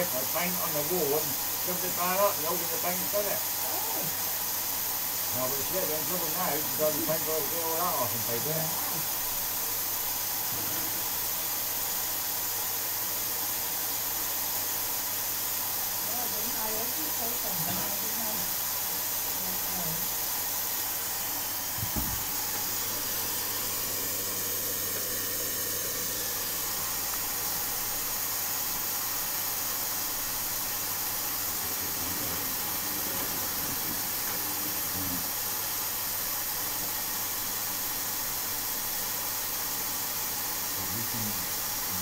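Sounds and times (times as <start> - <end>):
washing machine hissing: 0.0 - 42.0
short thud: 21.8 - 22.3.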